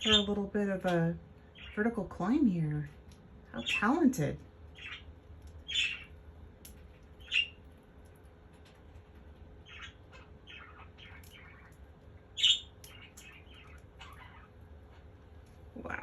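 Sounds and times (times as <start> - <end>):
parakeet chirping: 0.0 - 0.4, 1.4 - 2.1, 3.5 - 6.2, 7.1 - 7.7, 9.6 - 16.0
parakeet squawking: 0.0 - 0.4, 3.5 - 6.2, 7.2 - 7.6, 9.6 - 11.8, 12.4 - 15.1, 15.7 - 16.0.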